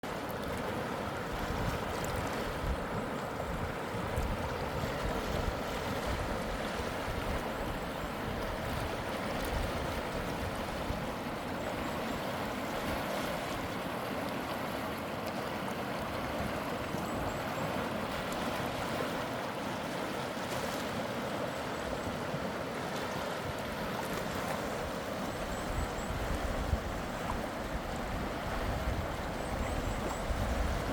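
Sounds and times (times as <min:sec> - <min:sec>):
stream rushing over rocks: 0:00.0 - 0:30.9
wind rumbling on microphone: 0:01.2 - 0:11.4, 0:23.8 - 0:30.9.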